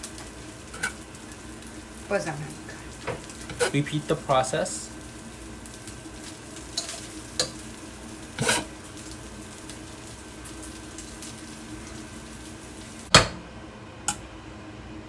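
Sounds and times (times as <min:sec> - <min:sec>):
butter sizzling in a pot: 0:00.0 - 0:13.2
spoon clinking and scraping: 0:00.7 - 0:01.0.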